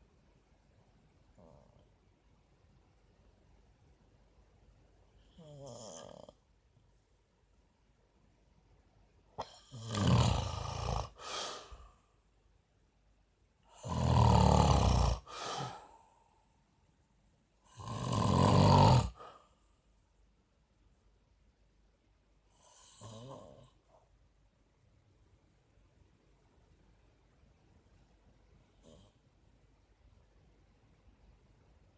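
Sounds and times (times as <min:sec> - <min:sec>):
man snoring: 0:05.3 - 0:06.4, 0:09.4 - 0:11.8, 0:13.7 - 0:15.9, 0:17.7 - 0:19.3, 0:22.6 - 0:23.8, 0:28.8 - 0:29.1.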